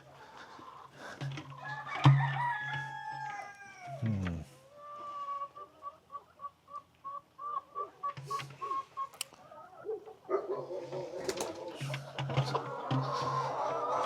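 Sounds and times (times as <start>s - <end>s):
chickens clucking and squawking: 0.0s - 14.0s.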